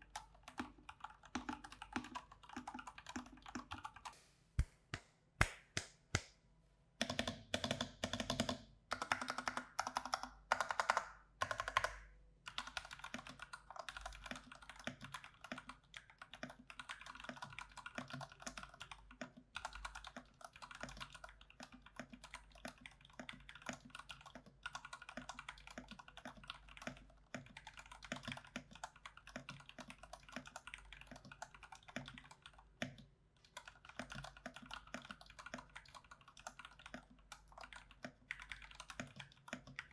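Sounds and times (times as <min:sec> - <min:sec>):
mechanical keyboard typing: 0:00.0 - 0:04.1, 0:07.0 - 0:39.9.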